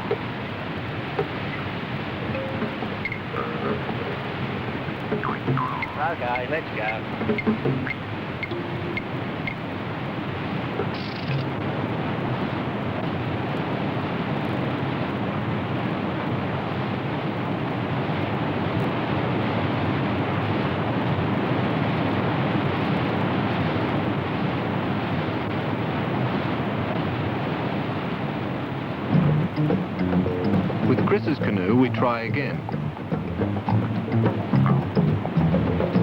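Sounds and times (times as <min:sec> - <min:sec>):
whitewater rapids roaring: 0:00.0 - 0:10.8.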